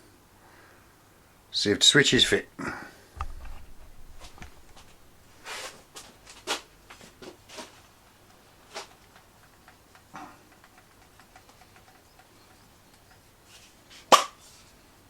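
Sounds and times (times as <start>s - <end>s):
objects knocking and clicking: 3.2s - 5.1s, 7.6s - 13.3s.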